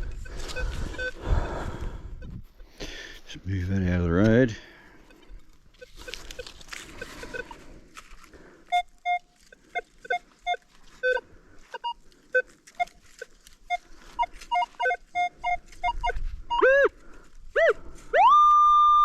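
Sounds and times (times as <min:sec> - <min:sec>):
metal detector beeps: 0:00.0 - 0:01.3, 0:05.0 - 0:07.6, 0:08.7 - 0:16.9
debris rustling and scraping: 0:05.1 - 0:08.4.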